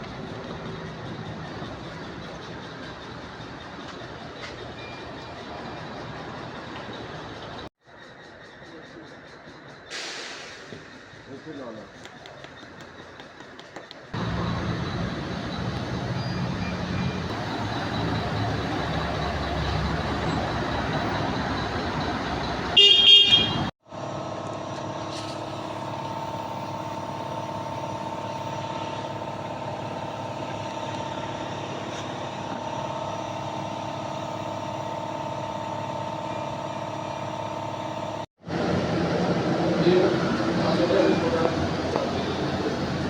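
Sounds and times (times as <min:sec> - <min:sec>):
rumbling vehicle engine: 0:00.0 - 0:13.4, 0:14.0 - 0:43.0
vehicle horn blast: 0:22.8 - 0:23.7.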